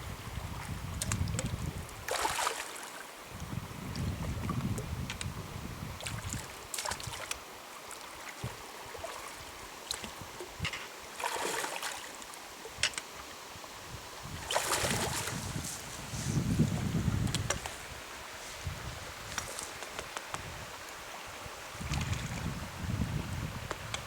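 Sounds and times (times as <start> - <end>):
water splashes: 0.4 - 3.1, 6.0 - 12.8, 14.2 - 21.1
water rushing: 6.1 - 24.0.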